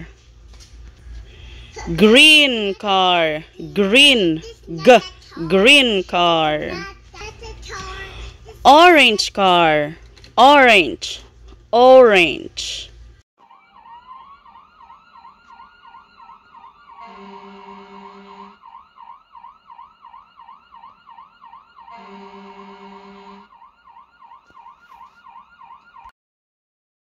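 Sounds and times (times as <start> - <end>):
toy siren warbling: 13.4 - 26.1
buzzy horn tone: 16.9 - 18.6, 21.8 - 23.6.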